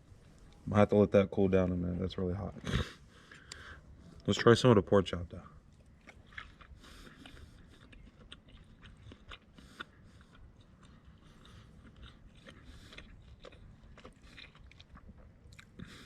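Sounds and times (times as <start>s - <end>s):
person chewing meat: 5.6s - 16.0s.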